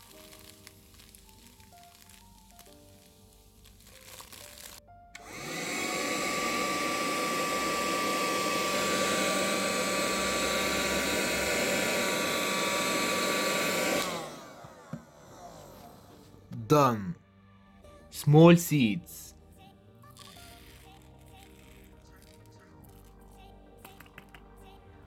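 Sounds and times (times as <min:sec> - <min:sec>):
cordless vacuum cleaner whining: 0:00.0 - 0:16.4.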